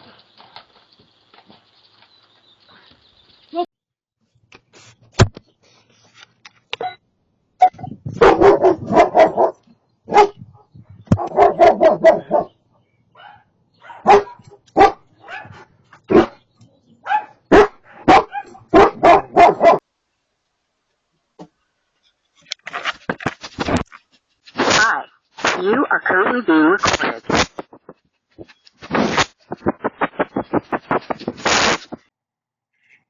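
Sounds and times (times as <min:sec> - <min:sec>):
dog barking: 0:08.2 - 0:12.5, 0:13.2 - 0:16.4, 0:17.0 - 0:19.8.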